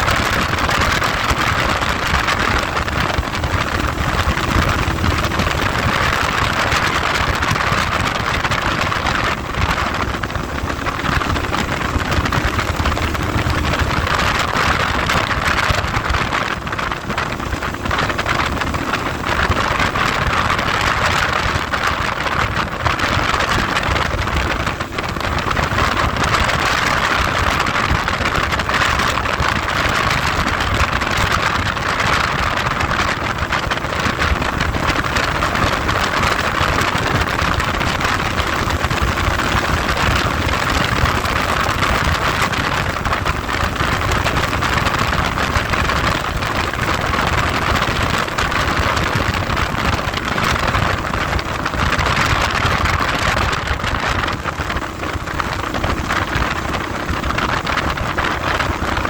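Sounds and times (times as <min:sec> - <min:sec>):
motorcycle engine running: 0:00.0 - 0:59.0
wind buffeting microphone: 0:00.0 - 0:59.0.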